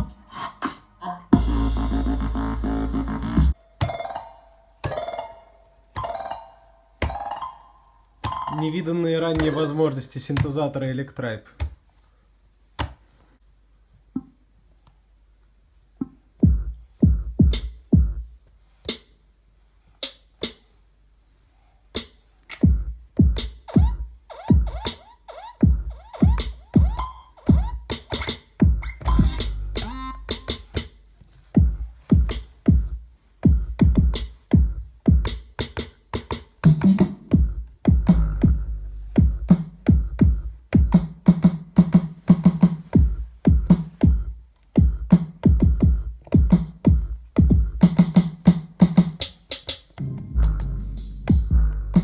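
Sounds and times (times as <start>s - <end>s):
high ticking hi-hats: 0.0s - 0.7s, 1.4s - 3.6s, 22.0s - 31.0s, 31.6s - 52.0s
drum machine pattern: 0.0s - 4.2s, 8.2s - 10.6s, 16.0s - 18.3s, 22.0s - 52.0s
synth bass: 1.3s - 3.6s, 22.7s - 27.9s, 28.6s - 30.7s, 31.6s - 35.2s, 37.3s - 41.0s, 50.0s - 52.0s.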